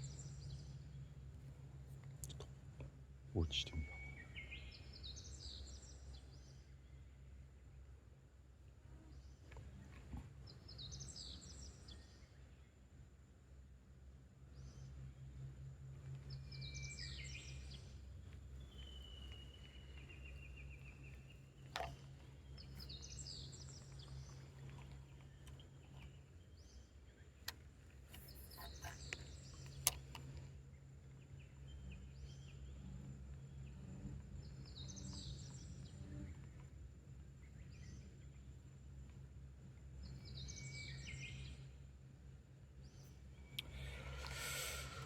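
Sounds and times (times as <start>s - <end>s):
songbird singing: 0.0s - 12.9s, 14.4s - 45.0s
sharp clicks: 27.4s - 30.4s.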